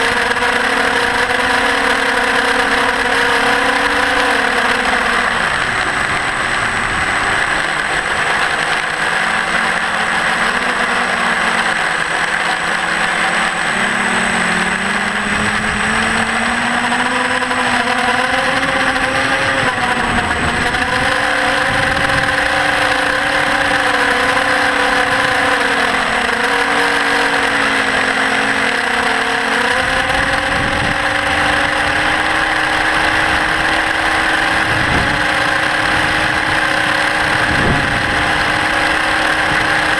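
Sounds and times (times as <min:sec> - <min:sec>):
quadcopter motors whirring: 0:00.0 - 0:39.9.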